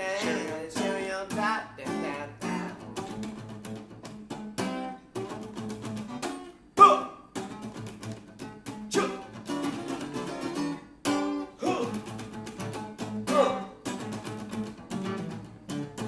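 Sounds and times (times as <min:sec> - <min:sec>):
acoustic guitar strumming: 0:00.0 - 0:16.0.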